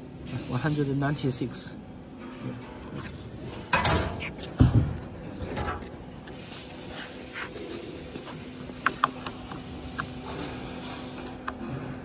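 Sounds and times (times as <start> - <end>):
steady hiss: 0.2 - 1.2, 6.2 - 11.5.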